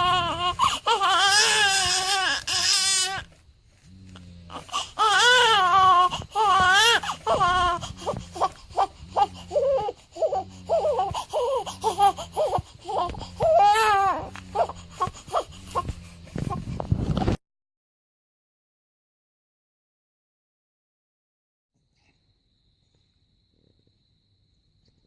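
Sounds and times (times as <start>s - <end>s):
newborn baby crying: 0.0s - 3.3s, 4.5s - 16.6s.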